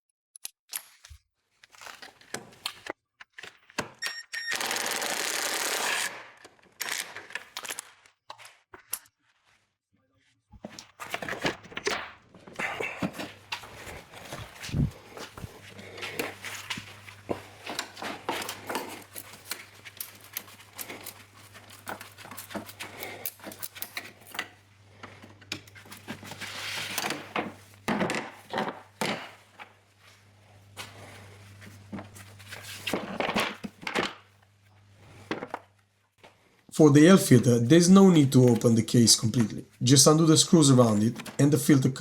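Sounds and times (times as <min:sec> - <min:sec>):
steady low hum: 0:12.6 - 0:21.2.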